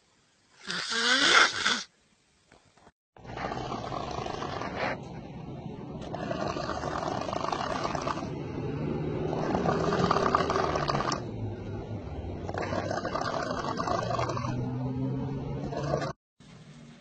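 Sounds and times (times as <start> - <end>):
man snoring loudly: 0.6 - 1.9, 3.2 - 4.9, 6.1 - 11.2, 12.4 - 15.0.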